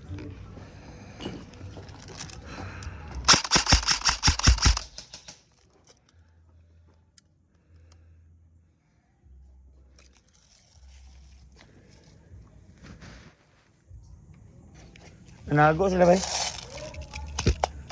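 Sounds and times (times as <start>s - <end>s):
airsoft rifle rapid shots: 3.3s - 5.4s.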